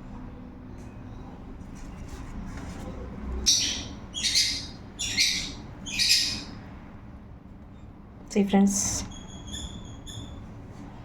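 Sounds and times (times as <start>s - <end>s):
bird chirping: 3.5s - 6.6s, 9.1s - 10.4s.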